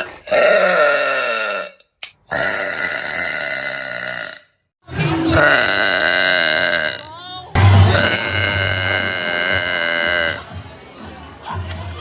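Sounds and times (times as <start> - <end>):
woman burping: 0.0 - 4.5, 5.3 - 7.2, 7.9 - 10.5.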